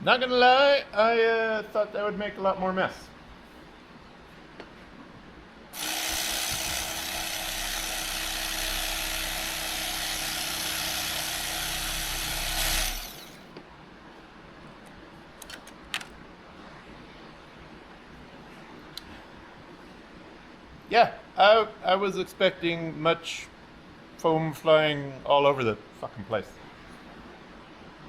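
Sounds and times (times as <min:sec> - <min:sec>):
electric cutting tool cutting foam: 0:05.8 - 0:13.5.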